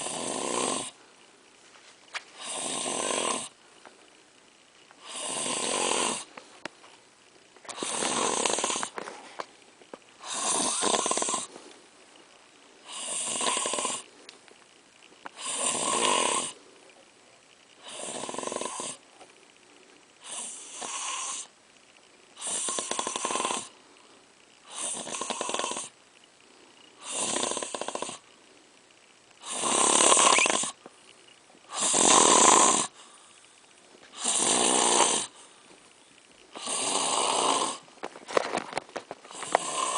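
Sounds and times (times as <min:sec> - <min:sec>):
loud rasping snoring: 0:00.0 - 0:01.0, 0:02.4 - 0:03.6, 0:05.0 - 0:06.3, 0:07.7 - 0:09.1, 0:10.2 - 0:11.6, 0:12.8 - 0:14.1, 0:15.3 - 0:16.6, 0:17.8 - 0:19.0, 0:20.2 - 0:21.5, 0:22.4 - 0:23.8, 0:24.6 - 0:26.0, 0:27.0 - 0:28.3, 0:29.4 - 0:30.8, 0:31.7 - 0:33.0, 0:34.1 - 0:35.4, 0:36.5 - 0:37.9, 0:39.3 - 0:39.9.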